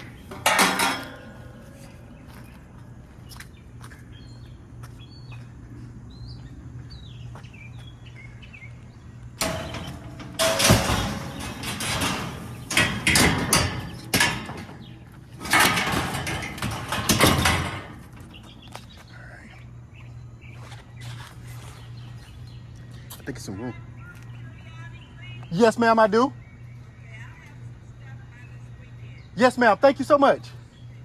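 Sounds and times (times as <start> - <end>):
metal rails clanking and scraping: 0.0 - 2.5, 9.4 - 19.0
birds chirping faintly: 0.0 - 31.0.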